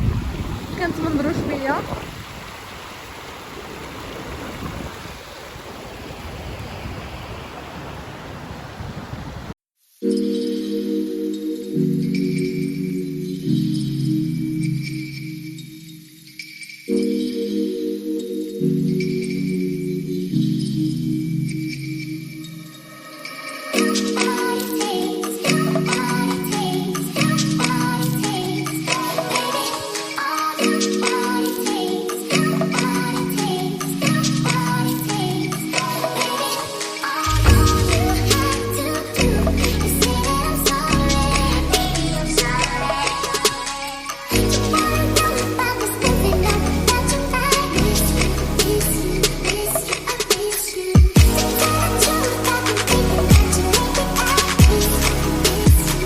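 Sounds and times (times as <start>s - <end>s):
background music with steady beat: 23.2s - 56.0s
outdoor rushing noise: 37.3s - 39.2s
low rumble: 37.3s - 39.8s.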